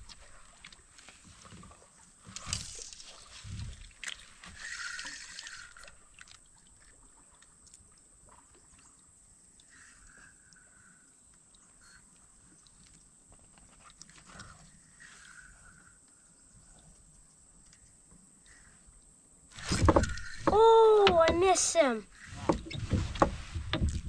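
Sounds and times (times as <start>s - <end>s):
water sloshing around kayak: 0.0s - 10.9s, 19.5s - 24.0s.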